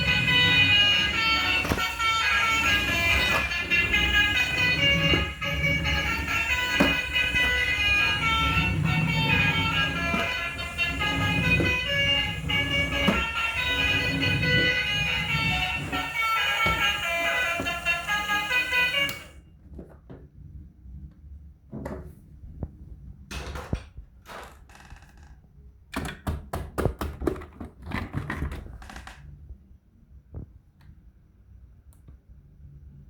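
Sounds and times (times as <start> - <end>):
plastic toy vehicles knocking: 26.0 - 29.2.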